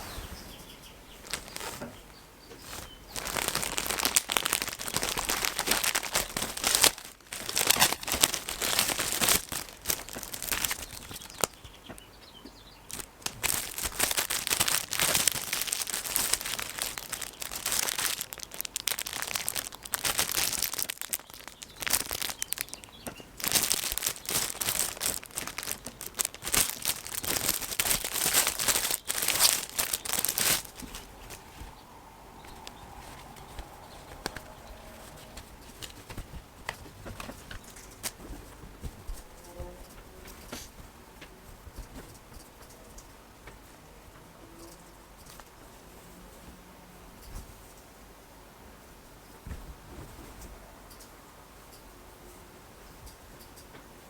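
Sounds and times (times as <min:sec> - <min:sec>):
packaging crinkling and rustling: 0:01.1 - 0:12.1, 0:12.8 - 0:42.8.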